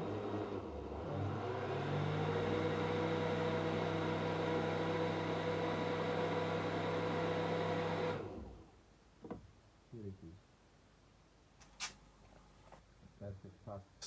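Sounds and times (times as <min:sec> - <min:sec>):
blender motor running: 0:00.0 - 0:08.5.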